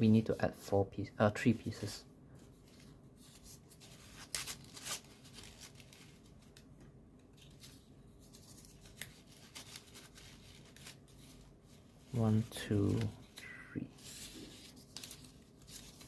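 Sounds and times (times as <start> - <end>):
paper rustling: 1.5 - 16.0.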